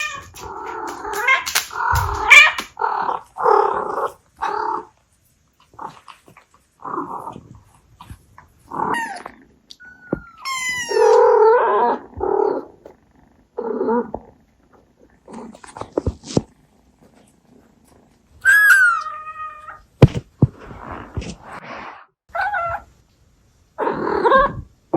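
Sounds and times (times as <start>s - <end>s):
cat meowing: 0.0s - 2.7s, 8.8s - 11.7s.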